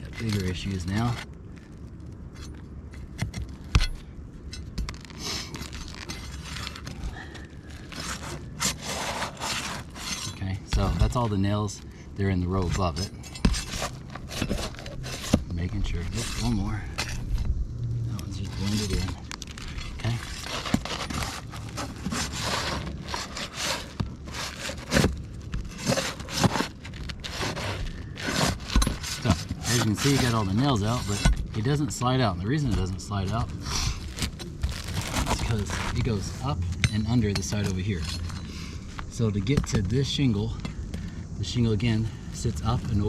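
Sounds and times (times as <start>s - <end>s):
metal tool scraping shingles: 7.8s - 11.7s, 12.5s - 17.5s, 18.4s - 39.5s.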